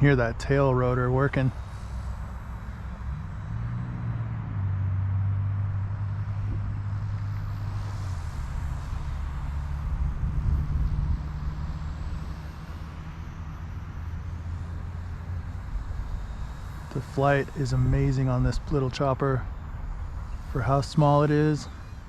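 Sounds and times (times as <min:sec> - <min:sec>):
toy helicopter rotors whirring: 0:07.5 - 0:22.0.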